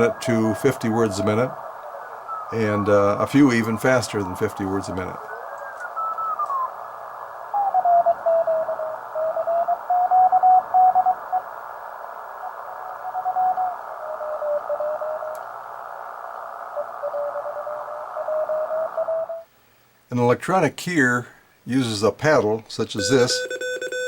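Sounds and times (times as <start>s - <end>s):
morse code tone: 0.0s - 1.6s, 7.6s - 11.5s, 12.4s - 15.4s, 16.7s - 19.4s, 23.0s - 24.0s
radio receiver hiss: 0.0s - 20.3s, 21.7s - 23.4s.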